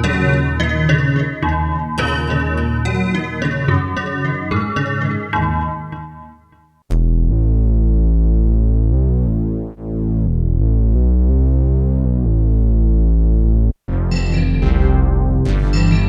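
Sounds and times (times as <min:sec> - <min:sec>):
synthesizer bass patch: 0:06.9 - 0:16.0.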